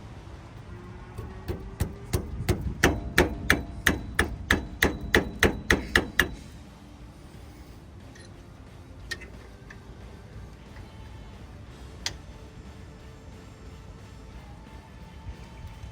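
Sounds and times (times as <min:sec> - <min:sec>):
hammer tapping metal: 0:01.2 - 0:06.5.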